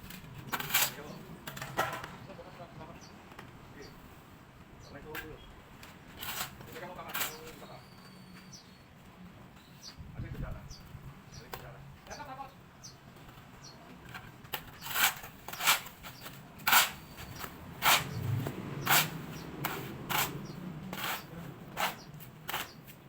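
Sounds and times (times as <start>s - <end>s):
sharp scraping knocks: 0.0s - 2.2s, 5.1s - 7.7s, 13.2s - 23.0s.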